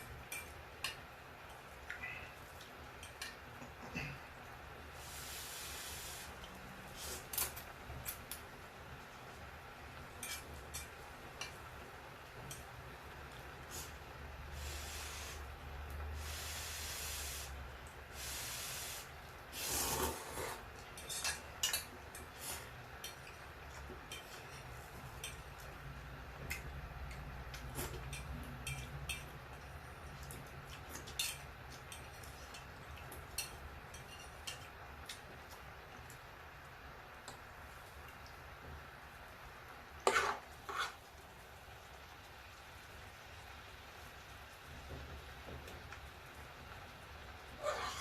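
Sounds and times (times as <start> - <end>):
short hissy noise: 5.0 - 7.3, 16.2 - 20.6.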